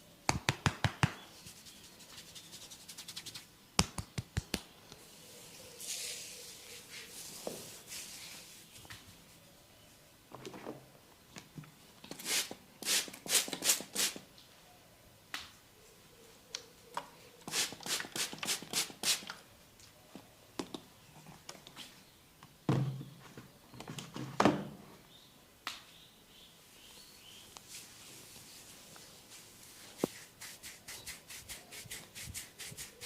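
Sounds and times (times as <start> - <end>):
hands patting during massage: 0.3 - 4.8.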